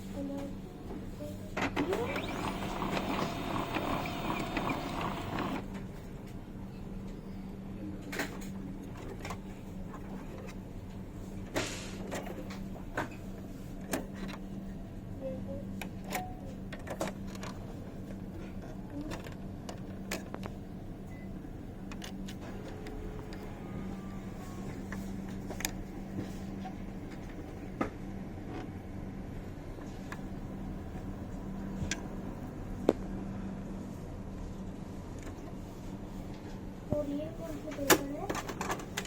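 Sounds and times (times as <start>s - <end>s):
laser printer humming: 1.7s - 5.8s, 22.4s - 25.0s.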